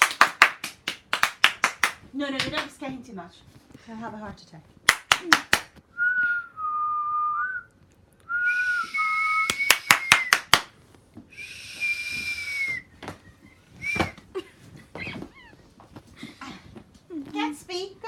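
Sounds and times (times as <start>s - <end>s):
person whistling: 5.9s - 7.7s, 8.3s - 10.6s, 11.3s - 13.0s, 13.8s - 14.2s.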